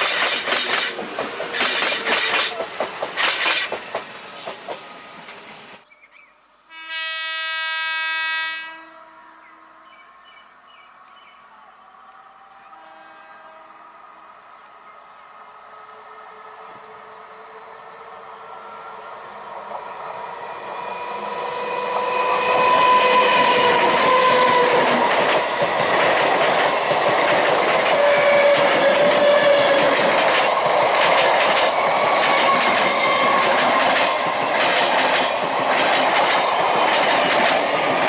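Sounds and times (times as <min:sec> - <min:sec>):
train wheels clattering on bridge: 0:00.0 - 0:05.4, 0:21.8 - 0:38.0.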